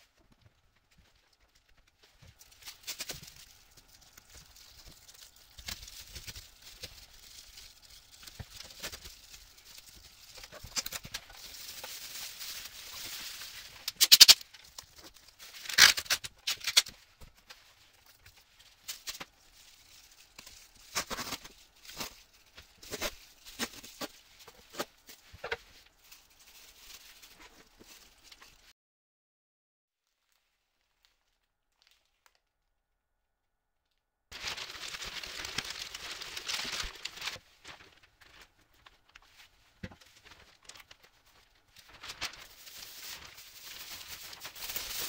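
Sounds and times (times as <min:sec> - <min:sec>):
air conditioner parts clicking and rattling: 0:00.1 - 0:26.0.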